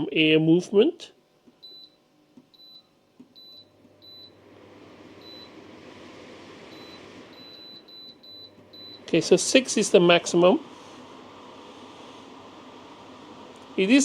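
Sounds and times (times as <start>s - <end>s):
fan air noise: 4.0s - 14.0s.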